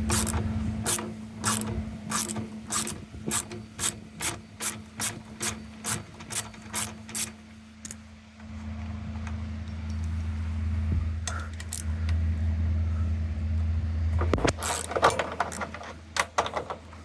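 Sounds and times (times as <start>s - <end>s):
ratchet wrench ratcheting: 0.0s - 8.0s, 14.5s - 15.8s
faint steady hum: 0.0s - 17.0s.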